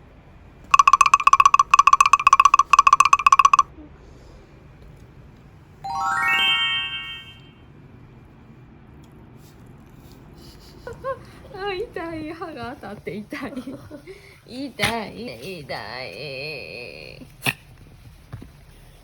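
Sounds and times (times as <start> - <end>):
electronic trilling ring: 0.7 - 3.6
rising chime notes: 5.8 - 7.7.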